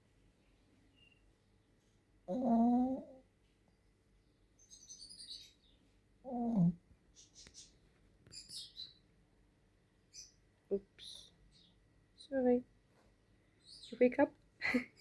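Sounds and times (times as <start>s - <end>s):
dog groaning: 2.3s - 3.2s, 6.3s - 6.8s.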